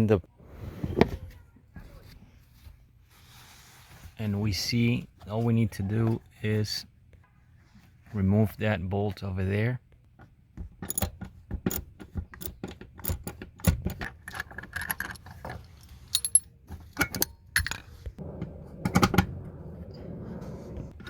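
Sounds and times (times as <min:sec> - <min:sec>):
seatbelt hardware clinking: 0:10.6 - 0:15.5, 0:16.1 - 0:17.9.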